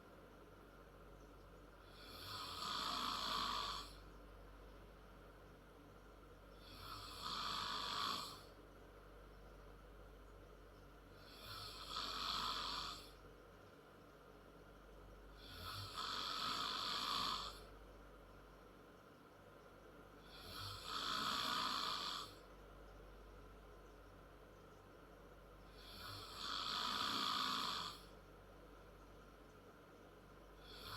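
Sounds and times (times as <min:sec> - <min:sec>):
quiet breathing: 0:01.6 - 0:04.2, 0:06.3 - 0:08.7, 0:10.8 - 0:13.4, 0:20.1 - 0:22.6, 0:25.5 - 0:28.3, 0:30.3 - 0:30.9
girl snoring: 0:02.0 - 0:04.0, 0:06.6 - 0:08.4, 0:11.3 - 0:13.1, 0:15.4 - 0:17.6, 0:20.3 - 0:22.4, 0:25.8 - 0:28.0.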